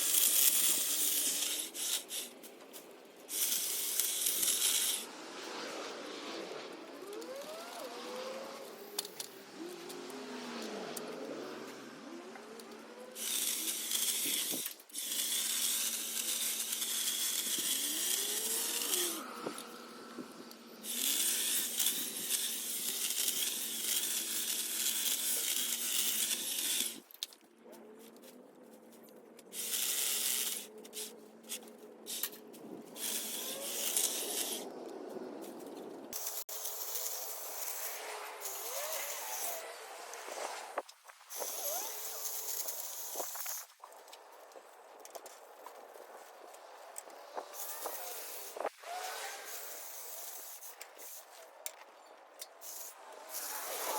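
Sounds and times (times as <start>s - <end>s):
hedge trimmer whining: 7.0s - 27.0s, 33.0s - 34.7s, 36.2s - 40.2s.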